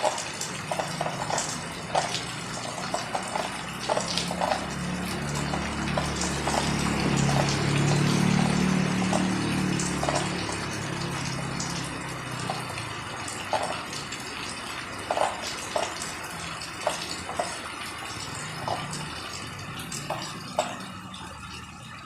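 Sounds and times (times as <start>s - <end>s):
heavy water drops splashing: 0.0s - 22.0s
steady rain falling: 0.0s - 22.0s.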